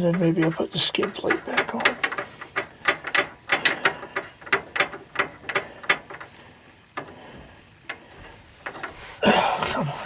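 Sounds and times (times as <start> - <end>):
ratchet wrench clicking: 1.0 - 6.4.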